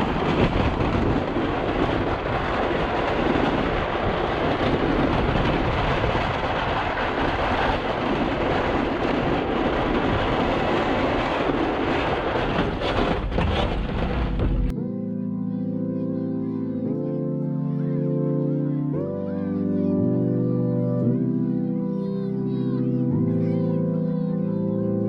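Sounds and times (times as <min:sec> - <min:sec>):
snow-plow truck rumbling: 0:00.0 - 0:14.7.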